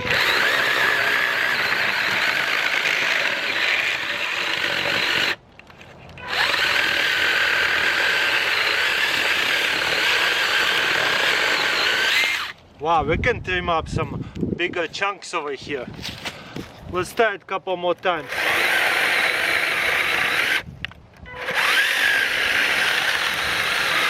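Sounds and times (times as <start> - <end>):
electric chainsaw cutting wood: 0.0 - 5.4, 6.2 - 12.6, 18.2 - 20.7, 21.4 - 24.0.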